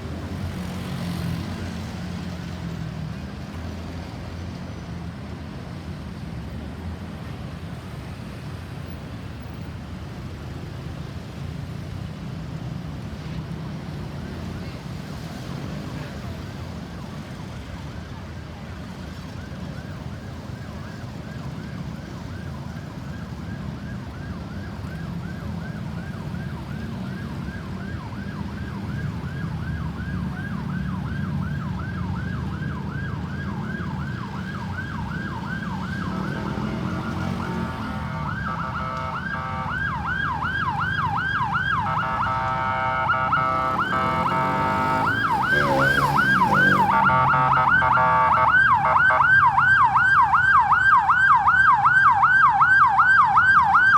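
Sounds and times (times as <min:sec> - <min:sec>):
low traffic rumble: 0:12.9 - 0:53.9
louder siren with steady tones: 0:19.7 - 0:53.9
ambulance siren yelping: 0:19.8 - 0:53.9.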